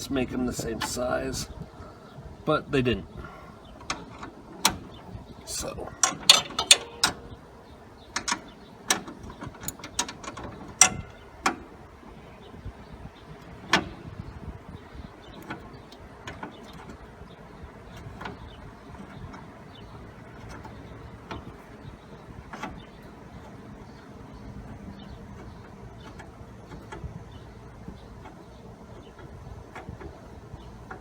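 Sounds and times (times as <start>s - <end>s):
wrenches clinking on metal nuts: 5.5s - 7.3s, 8.2s - 11.6s.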